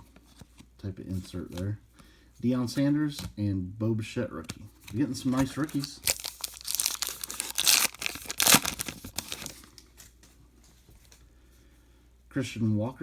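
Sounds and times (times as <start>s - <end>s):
card pack wrapper tearing and crinkling: 4.9s - 9.8s.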